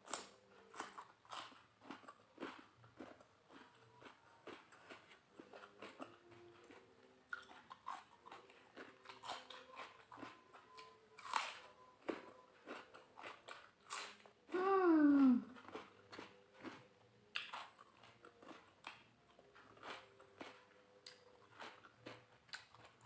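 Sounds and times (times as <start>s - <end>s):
chewing and crunching food: 0.0s - 23.0s
person humming: 14.5s - 15.6s.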